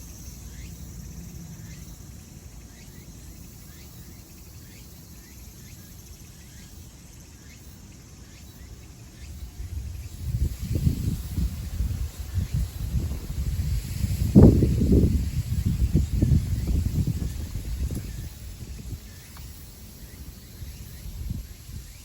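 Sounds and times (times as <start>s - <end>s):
wind buffeting microphone: 9.2s - 22.0s.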